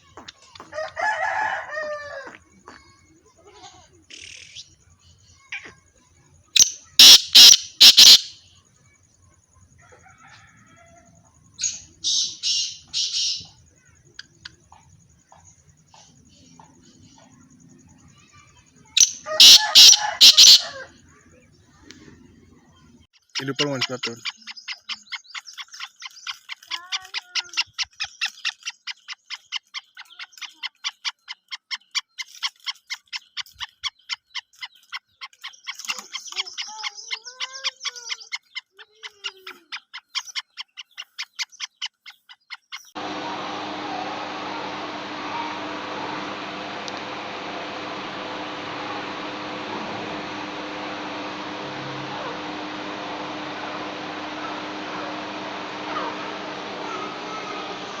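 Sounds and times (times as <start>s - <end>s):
partridge calling: 6.6s - 8.3s, 11.6s - 13.5s, 19.0s - 20.8s
steady hum: 43.0s - 58.0s.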